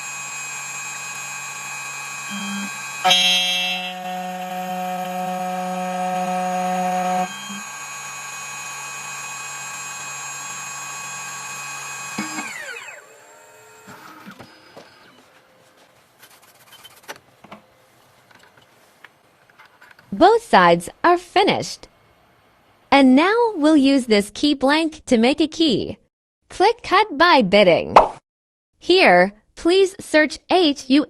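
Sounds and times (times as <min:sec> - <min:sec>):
spindle motor whine: 0:00.0 - 0:15.6.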